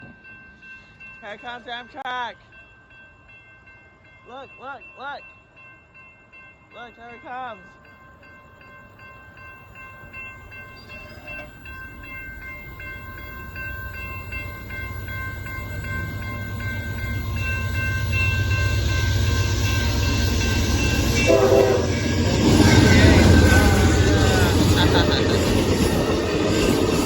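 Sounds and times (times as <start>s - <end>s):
crossing warning bell ringing: 0.0s - 27.0s
train rumble: 8.1s - 27.0s
train horn: 20.8s - 24.6s.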